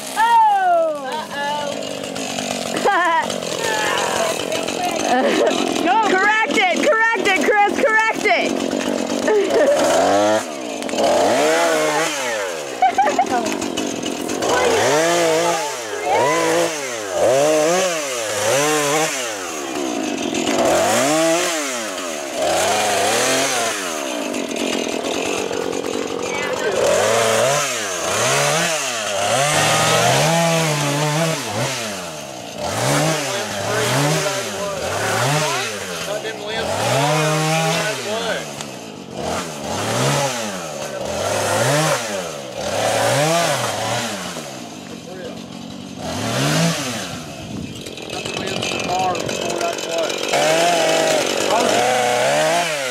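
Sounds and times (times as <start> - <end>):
chainsaw engine revving: 0.0 - 52.9.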